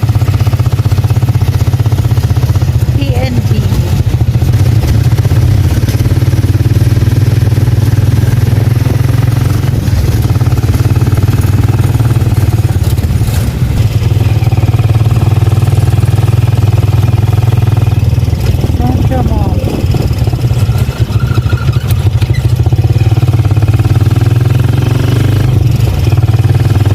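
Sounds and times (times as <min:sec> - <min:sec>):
small engine droning: 0:00.0 - 0:26.9.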